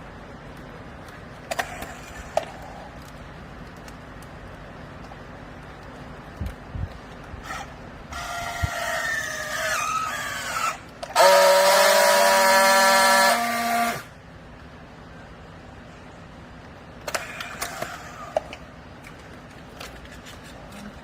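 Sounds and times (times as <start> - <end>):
hydraulic baler whine: 7.4 - 14.2.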